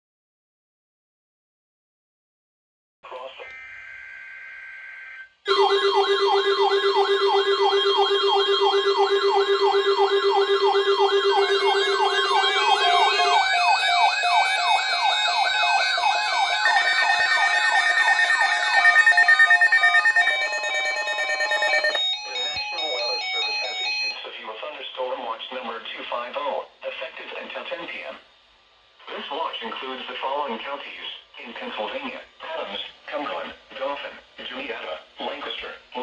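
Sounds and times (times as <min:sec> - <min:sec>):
electronic siren wails: 0:03.4 - 0:24.2
steady high tone: 0:03.4 - 0:24.2
warbling tones: 0:05.5 - 0:22.0.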